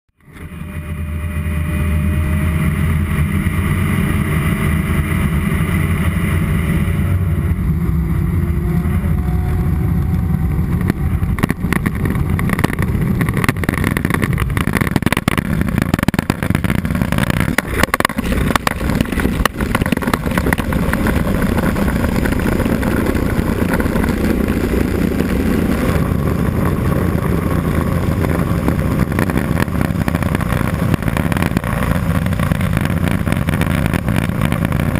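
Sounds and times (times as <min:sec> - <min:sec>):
turboprop engine drone: 0:00.1 - 0:34.9
faint tone: 0:00.2 - 0:13.1.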